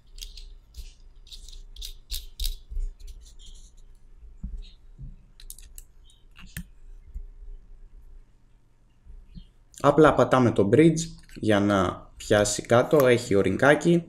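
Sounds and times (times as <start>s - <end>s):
small metal parts clicking: 0.0s - 2.7s.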